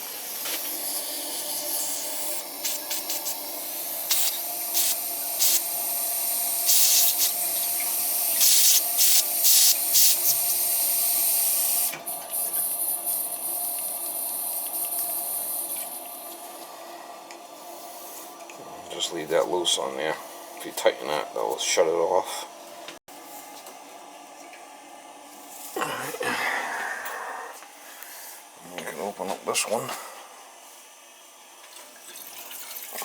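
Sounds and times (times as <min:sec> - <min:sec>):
water and air hissing through pipes: 0:00.0 - 0:22.5
water spurts: 0:31.6 - 0:33.0.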